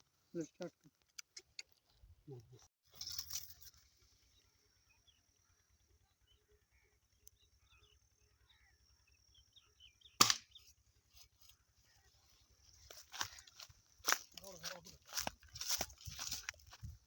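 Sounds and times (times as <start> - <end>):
faint bird chirps: 3.3 - 14.0
airgun shot: 10.2 - 10.6.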